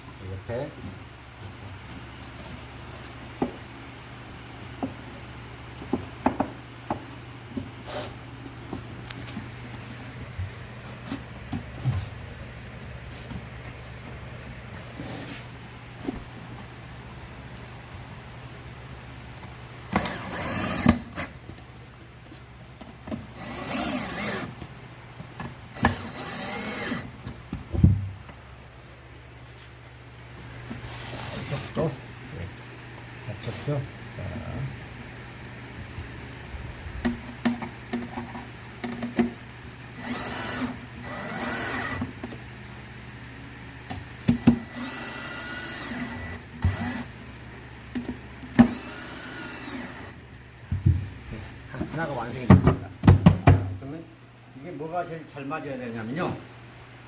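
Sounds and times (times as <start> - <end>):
knocks of wood and tool: 5.8 - 7.8
cordless drill driving screws: 19.9 - 21.3, 23.4 - 24.6, 25.8 - 27.1, 40.0 - 42.1, 44.4 - 47.1, 48.6 - 50.2.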